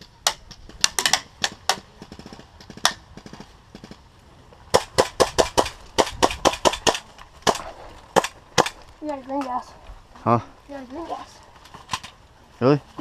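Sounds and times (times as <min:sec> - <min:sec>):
airsoft guns firing: 0:00.2 - 0:04.0, 0:04.7 - 0:08.8.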